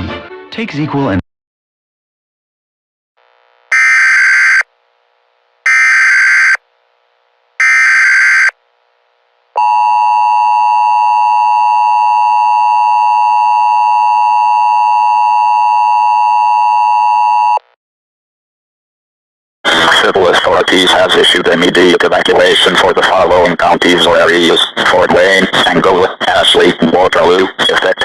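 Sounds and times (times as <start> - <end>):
digital alert header bursts: 3.7 - 4.6, 5.7 - 6.6, 7.6 - 8.5
two-tone attention signal: 3.7 - 4.6, 5.7 - 6.6.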